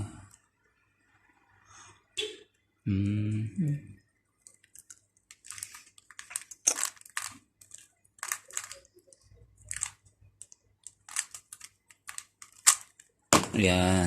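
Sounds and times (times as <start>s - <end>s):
puzzle cube being twisted: 4.5s - 13.2s.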